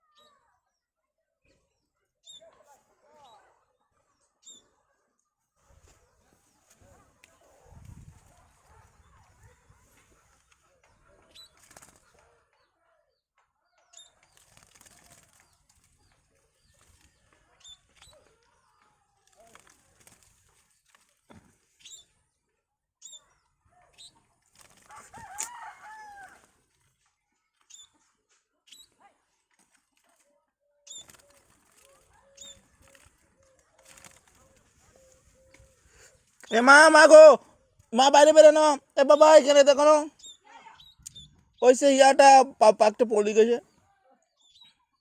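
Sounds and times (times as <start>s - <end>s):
small birds chirping: 30.8s - 36.8s, 38.0s - 41.8s.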